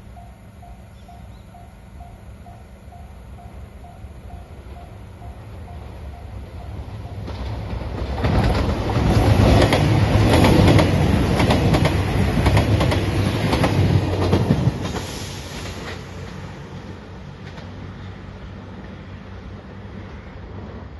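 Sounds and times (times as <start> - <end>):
train wheels clattering over rails: 6.5 - 18.0.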